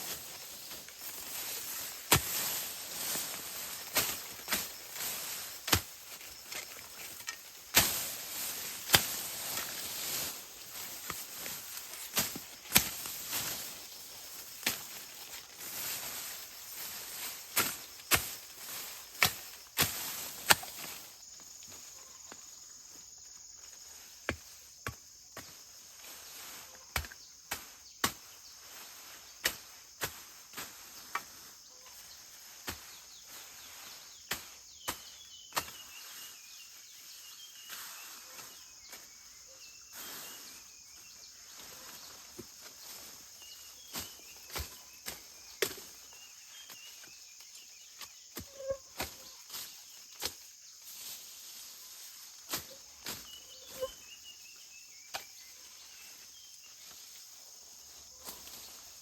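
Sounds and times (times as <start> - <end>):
hissing rustle: 0.0 - 21.2
insects droning: 0.0 - 59.0.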